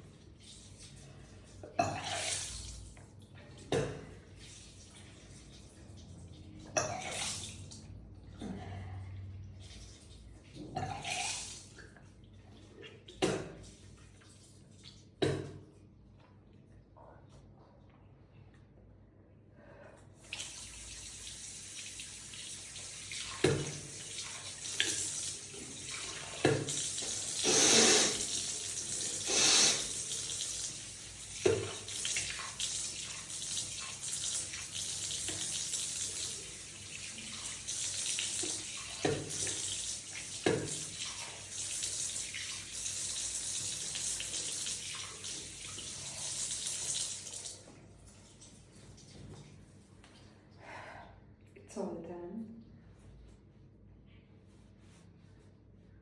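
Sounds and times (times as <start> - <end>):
water running into a sink: 1.8 - 3.0, 10.6 - 11.9, 20.2 - 47.7.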